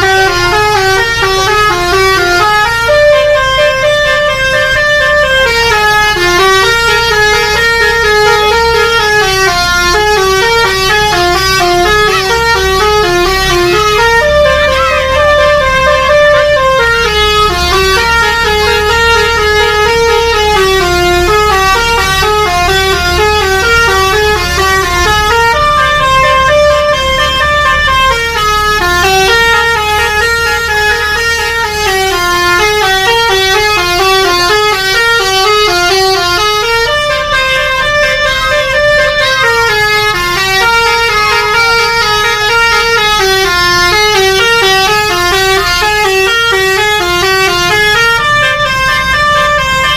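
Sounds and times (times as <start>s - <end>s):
bus horn playing melody: 0.0s - 49.9s.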